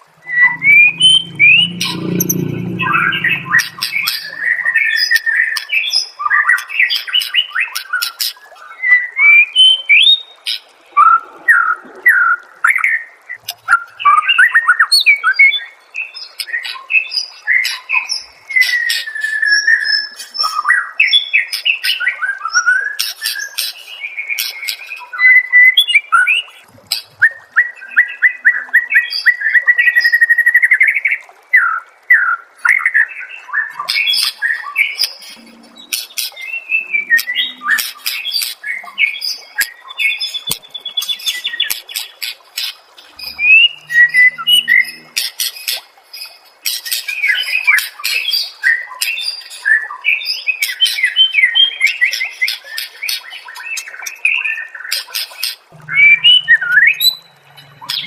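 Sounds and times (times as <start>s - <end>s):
songbird singing: 0.0s - 7.6s, 32.2s - 58.0s.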